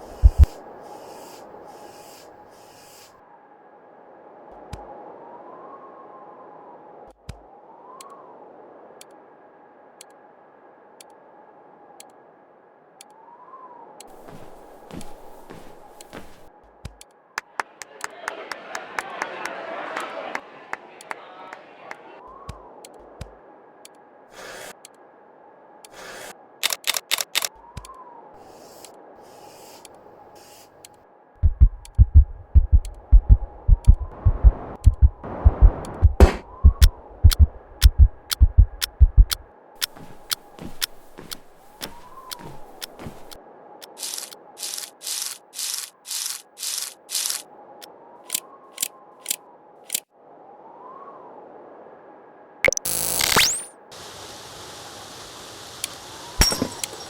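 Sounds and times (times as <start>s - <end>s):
low heartbeat thumps: 0.0s - 0.6s, 31.4s - 41.3s
rushing noise with knocks: 0.0s - 0.6s, 31.4s - 43.4s
sharp clicks: 0.0s - 0.6s, 26.6s - 27.9s, 31.4s - 47.4s, 52.7s - 53.7s
faint hiss: 0.0s - 3.2s, 28.4s - 31.0s, 52.9s - 57.0s
clock ticking: 31.4s - 41.4s.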